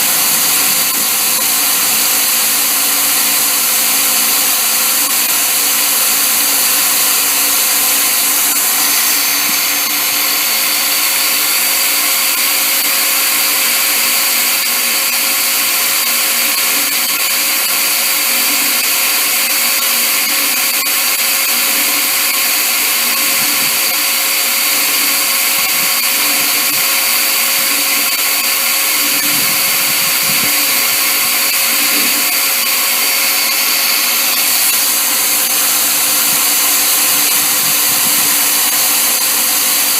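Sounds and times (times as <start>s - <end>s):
electric drill drilling: 0.0s - 39.9s.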